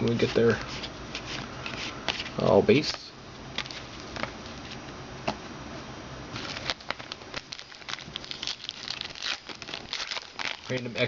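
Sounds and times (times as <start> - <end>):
trading cards rustling and clicking: 6.4 - 11.0.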